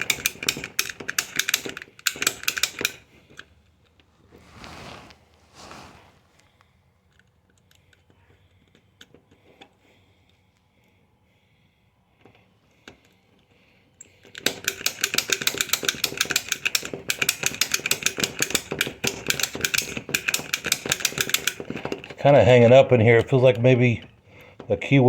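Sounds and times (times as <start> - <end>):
rapid metallic clicking: 0.0 - 3.0, 14.4 - 21.9
lock pick ticking on pins: 0.0 - 3.5, 14.0 - 22.2.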